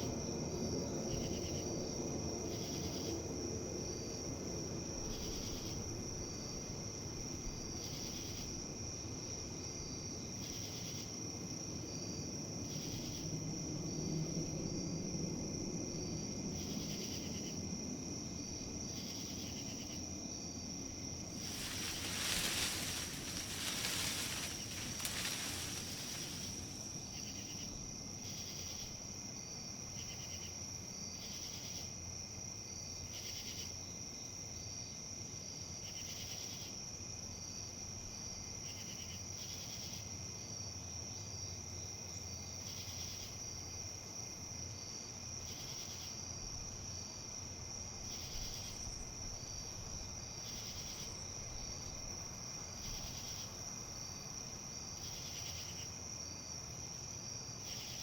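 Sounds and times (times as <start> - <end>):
insect trill: 18.4 - 29.6
leaves rustling in wind: 21.1 - 27.6
low outdoor rumble: 21.4 - 27.4
short insect chirps: 21.4 - 27.5.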